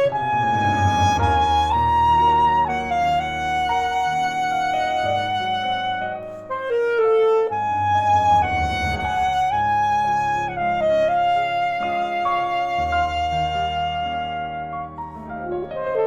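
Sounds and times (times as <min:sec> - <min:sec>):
alto saxophone melody: 0:00.0 - 0:16.0
piano accompaniment: 0:00.0 - 0:16.0.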